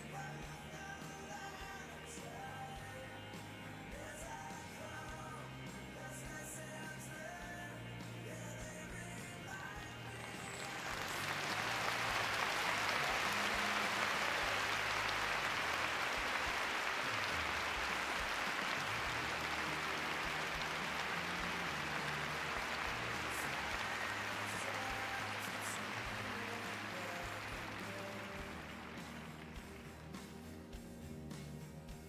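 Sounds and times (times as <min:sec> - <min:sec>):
faint music: 0:00.0 - 0:32.0
crowd applauding: 0:09.6 - 0:30.5.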